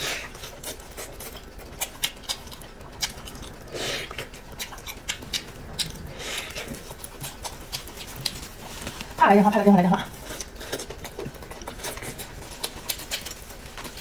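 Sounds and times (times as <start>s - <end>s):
crisp chewing clicks: 0.6s - 9.1s, 10.4s - 14.0s
wet mouth noises: 1.8s - 9.1s.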